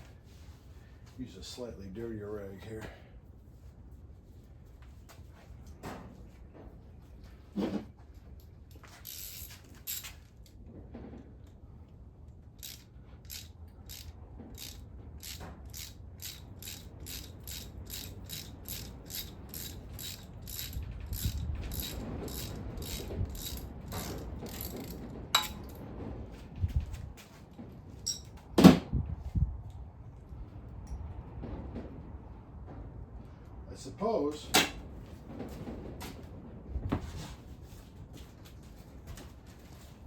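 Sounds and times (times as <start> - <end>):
ratchet wrench clicking: 8.8 - 10.6, 12.6 - 25.8
metal clinks: 12.6 - 25.8, 28.0 - 28.3.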